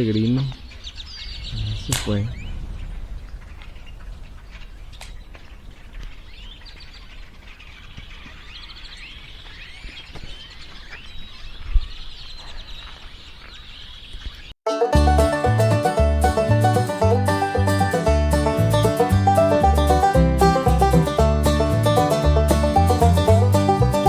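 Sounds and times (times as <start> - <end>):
steady low rumble: 0.0 - 6.9
small birds chirping: 0.0 - 14.6
sharp thump: 1.5 - 3.7.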